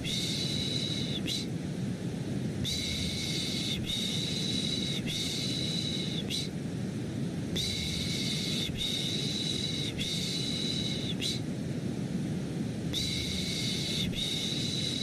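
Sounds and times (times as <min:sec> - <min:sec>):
white noise: 0:00.0 - 0:15.0
person shushing: 0:13.0 - 0:15.0.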